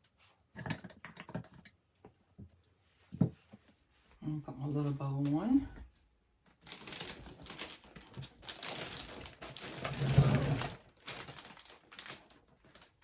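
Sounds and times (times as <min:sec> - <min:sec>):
cellophane bag crinkling: 0:06.6 - 0:13.0.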